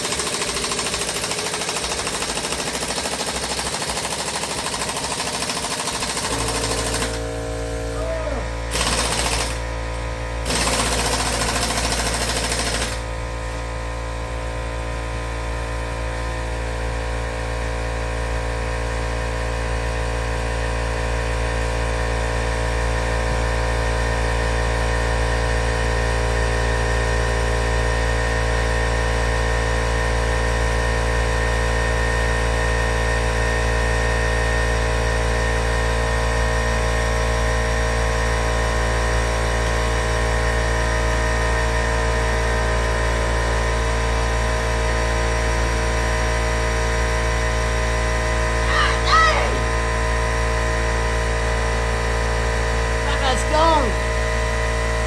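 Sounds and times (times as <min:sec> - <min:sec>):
air impact wrench hammering: 0:00.0 - 0:13.1.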